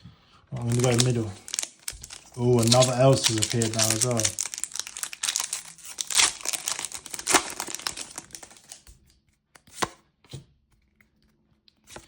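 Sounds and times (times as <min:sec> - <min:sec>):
wrapper crinkling and tearing: 0:00.5 - 0:08.9
cards tapping and rustling: 0:00.6 - 0:09.0.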